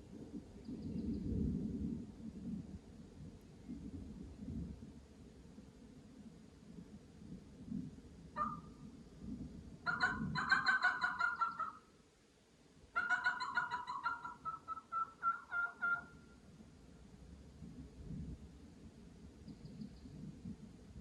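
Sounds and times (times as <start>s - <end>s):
turkey calling with rapid rattling notes: 8.4s - 8.7s, 9.9s - 11.8s, 13.0s - 16.2s.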